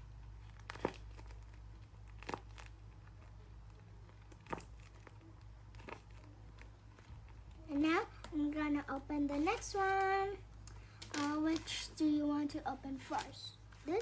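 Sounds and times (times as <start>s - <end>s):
low steady hum: 0.0s - 14.0s
plastic packaging crinkling: 0.3s - 8.4s, 9.4s - 12.2s.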